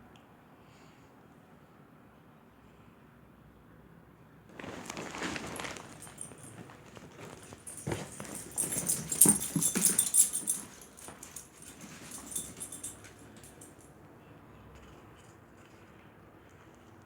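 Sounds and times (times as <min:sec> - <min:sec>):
crackly noise: 0:04.5 - 0:08.0.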